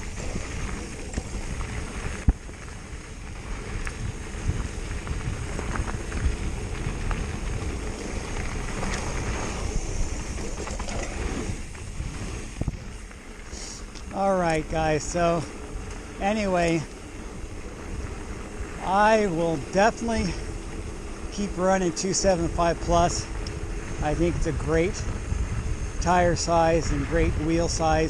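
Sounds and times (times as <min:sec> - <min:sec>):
wind on microphone: 0:00.0 - 0:14.0, 0:22.2 - 0:28.0
bike clicks and rattles: 0:00.0 - 0:28.0
bike tires rumbling over dirt: 0:00.0 - 0:28.0.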